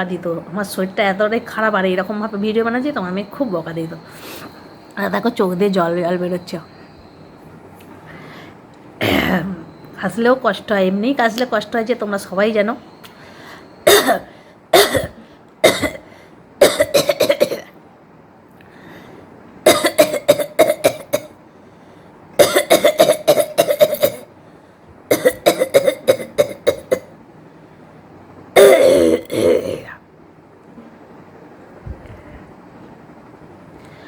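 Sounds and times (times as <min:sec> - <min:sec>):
woman coughing: 0:09.0 - 0:09.6, 0:13.8 - 0:17.7, 0:19.7 - 0:21.4, 0:22.4 - 0:24.3, 0:25.1 - 0:27.1, 0:28.6 - 0:29.9.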